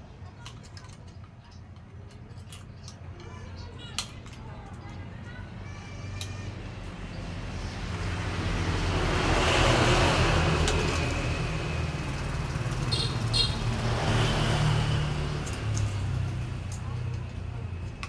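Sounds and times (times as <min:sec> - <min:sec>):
motor vehicle passing: 0:07.0 - 0:17.8.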